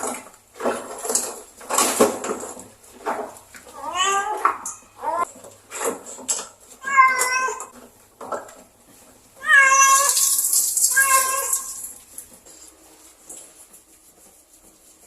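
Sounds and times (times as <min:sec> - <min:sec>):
cat yowling: 0:06.8 - 0:07.7, 0:09.4 - 0:11.7.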